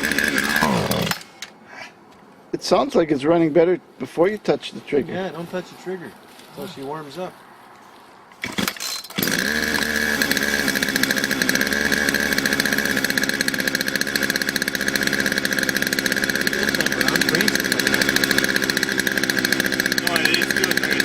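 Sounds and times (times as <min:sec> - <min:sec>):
two-stroke chainsaw idling: 0:00.0 - 0:01.3, 0:08.4 - 0:21.0.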